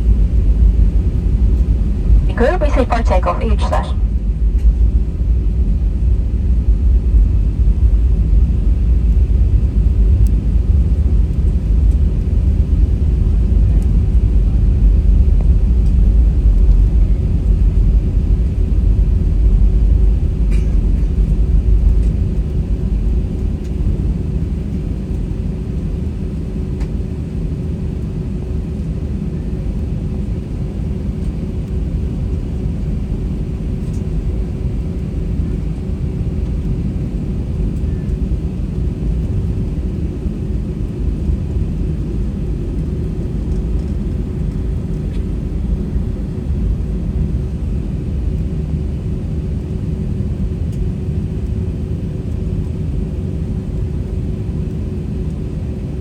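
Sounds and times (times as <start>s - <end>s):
airplane engine hum: 0.0s - 6.1s, 7.2s - 56.0s
low cabin rumble: 2.3s - 4.1s.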